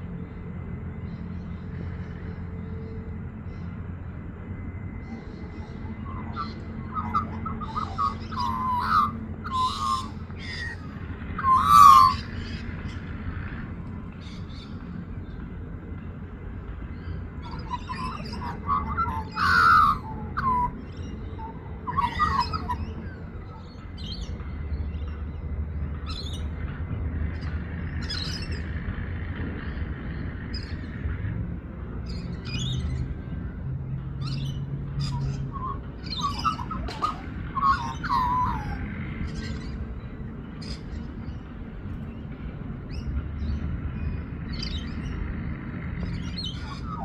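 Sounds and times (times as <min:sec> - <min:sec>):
magpie warbling: 0:05.0 - 0:12.7, 0:17.4 - 0:23.8, 0:35.0 - 0:39.8, 0:46.1 - 0:47.0.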